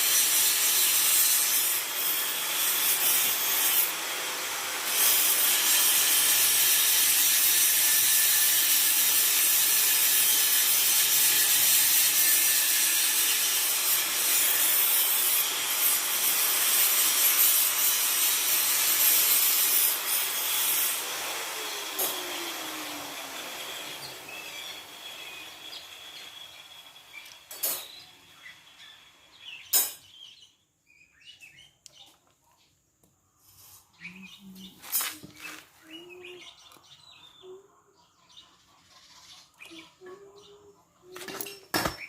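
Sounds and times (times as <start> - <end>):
angle grinder running: 0.0 - 28.0.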